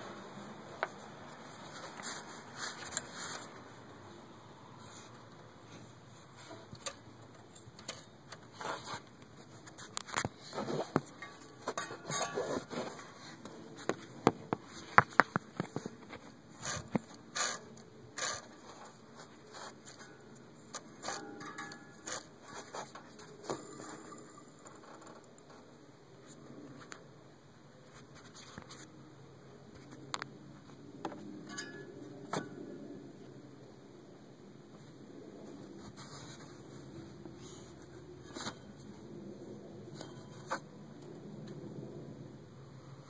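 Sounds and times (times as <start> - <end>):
clicks and knocks of metal: 6.4 - 9.3, 9.9 - 18.9, 19.8 - 25.6, 31.1 - 32.6.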